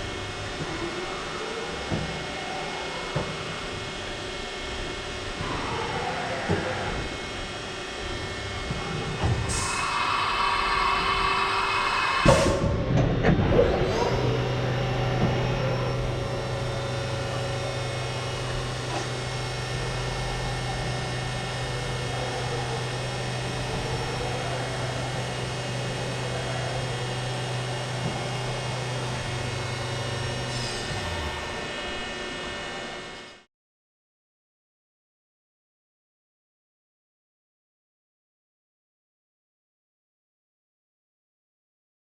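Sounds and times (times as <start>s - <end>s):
high machine whine: 0.0s - 33.5s
machining centre humming: 0.0s - 33.5s.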